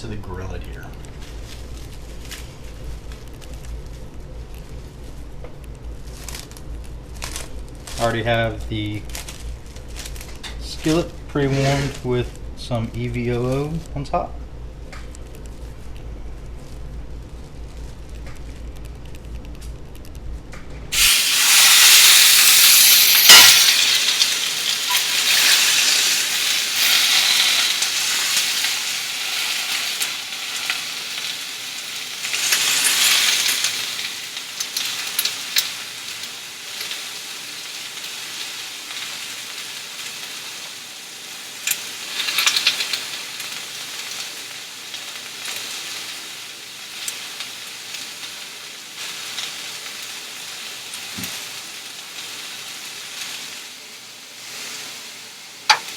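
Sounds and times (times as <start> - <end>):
meat sizzling in oil: 20.9 - 55.9.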